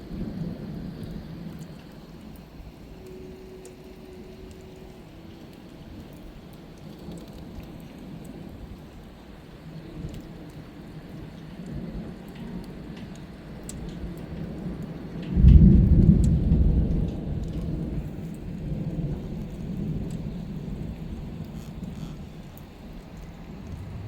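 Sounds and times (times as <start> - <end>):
steady rain: 0.0 - 24.0
thunder rumbling: 12.8 - 24.0.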